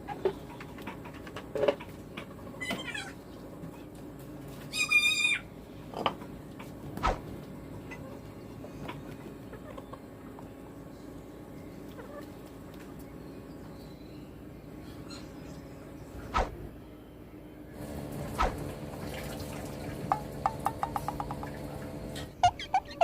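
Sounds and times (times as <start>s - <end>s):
animal calls: 4.7s - 5.5s, 22.4s - 23.0s.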